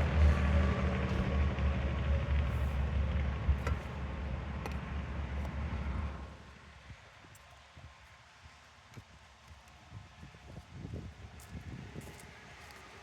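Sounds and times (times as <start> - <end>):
low motor rumble: 0.0 - 6.4.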